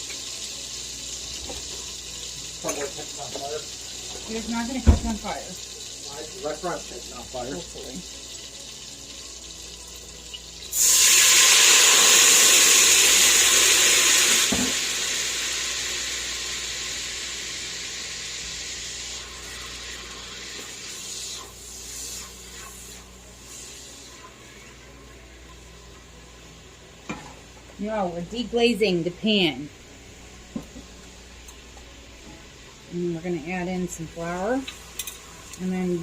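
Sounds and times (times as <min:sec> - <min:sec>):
liquid hissing in hot pan: 0:00.0 - 0:25.0
meat sizzling in a pan: 0:00.0 - 0:27.1, 0:34.2 - 0:36.0.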